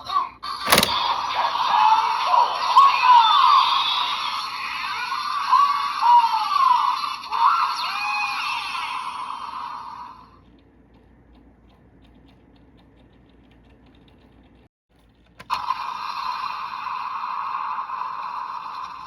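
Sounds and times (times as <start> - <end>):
sharp click: 0.7 - 1.0.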